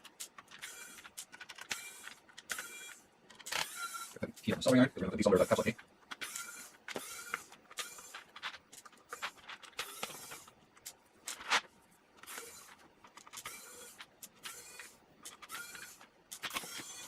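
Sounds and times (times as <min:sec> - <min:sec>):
screwdriver squeaky scraping: 0:12.2 - 0:17.0.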